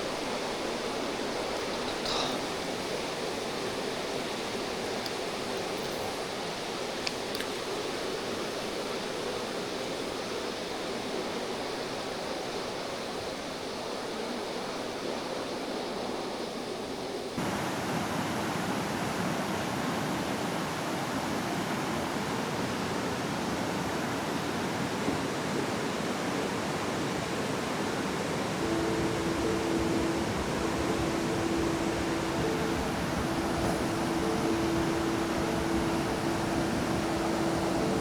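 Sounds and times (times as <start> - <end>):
stream rushing over rocks: 17.4 - 22.5, 28.4 - 38.0.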